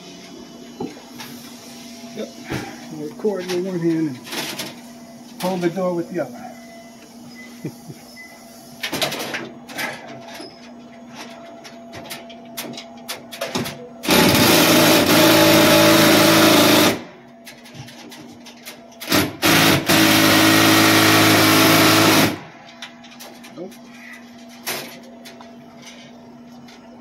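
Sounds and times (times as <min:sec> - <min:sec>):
power drill motor whine: 0:14.0 - 0:17.2, 0:19.0 - 0:22.4.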